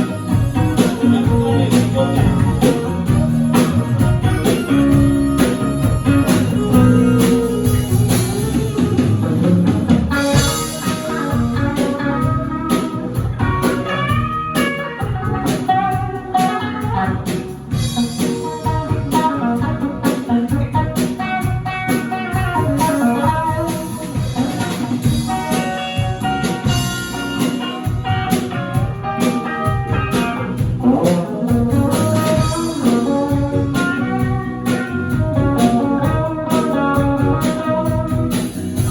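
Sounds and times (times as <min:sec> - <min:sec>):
band playing: 0:00.0 - 0:38.9
drum kit: 0:00.0 - 0:38.9
guitar: 0:00.0 - 0:38.9.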